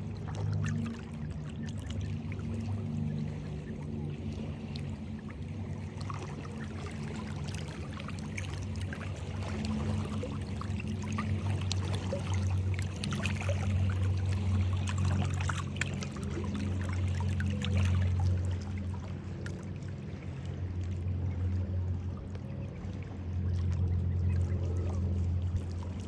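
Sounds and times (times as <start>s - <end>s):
low steady hum: 0.0s - 26.0s
water pouring and trickling: 4.3s - 21.1s.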